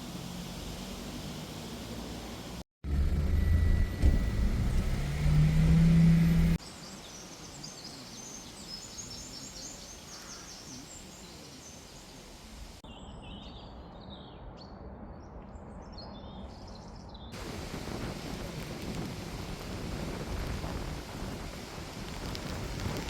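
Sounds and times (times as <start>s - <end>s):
small birds chirping: 5.8s - 17.6s
breeze hiss: 17.4s - 23.0s.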